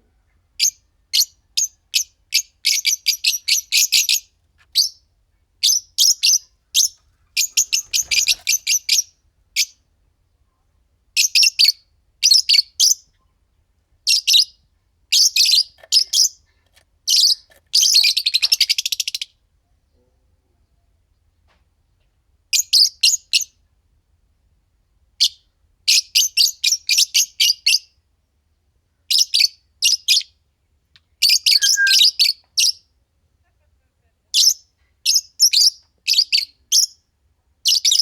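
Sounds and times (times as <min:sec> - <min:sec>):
birds chirping shrilly: 0:31.5 - 0:32.2.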